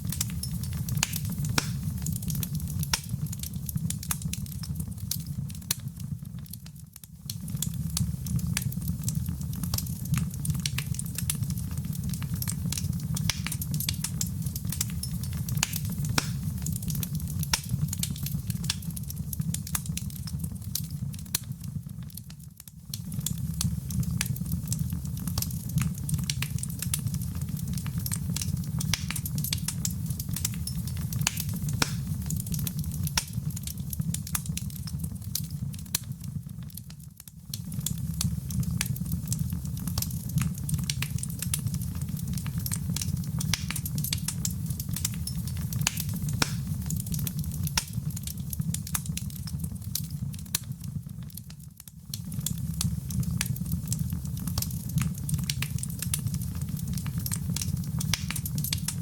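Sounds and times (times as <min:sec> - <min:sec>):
fire rumbling: 0:00.0 - 0:59.0
wood fire crackling and popping: 0:00.0 - 0:59.0.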